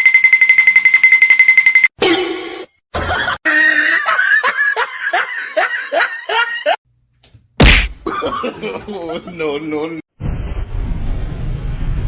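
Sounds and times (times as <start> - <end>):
person laughing: 3.0 - 6.8, 8.0 - 9.8.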